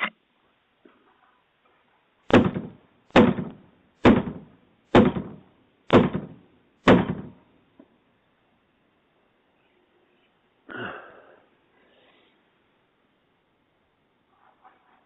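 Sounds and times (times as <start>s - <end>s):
heavy pounding on a door: 2.3s - 7.4s.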